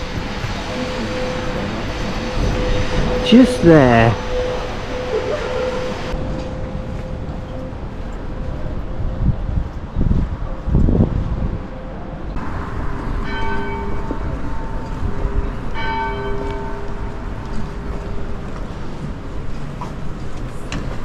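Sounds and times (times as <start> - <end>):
wind rumble on microphone: 6.0 - 15.9
church bell ringing: 12.8 - 19.0.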